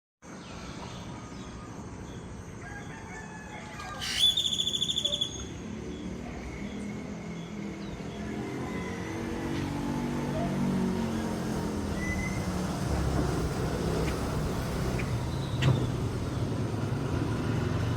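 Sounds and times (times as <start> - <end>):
traffic rumble: 0.2 - 17.9
birds calling: 3.6 - 6.8, 13.8 - 16.6
bird call with rapid trill: 3.8 - 5.6.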